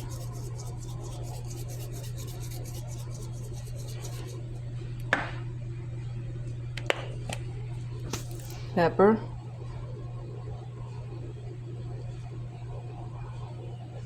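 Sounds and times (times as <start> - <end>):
salt shaker rasping: 0.0 - 4.5.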